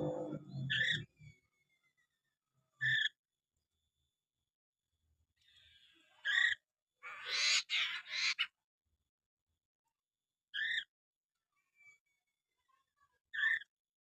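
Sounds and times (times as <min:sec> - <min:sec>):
bird harsh rasping chatter: 0:06.2 - 0:08.6.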